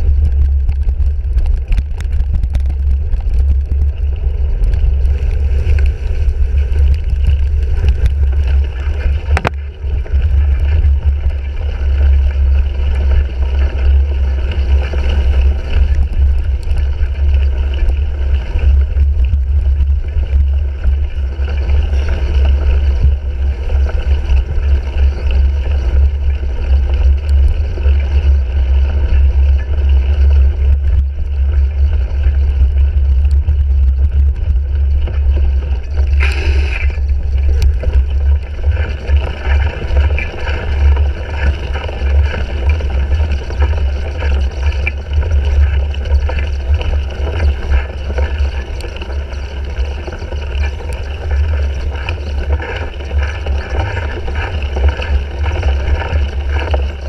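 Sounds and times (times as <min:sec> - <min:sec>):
wind and riding vibration rumble: 0:00.0 - 0:57.0
brief sharp noise: 0:36.2 - 0:37.0.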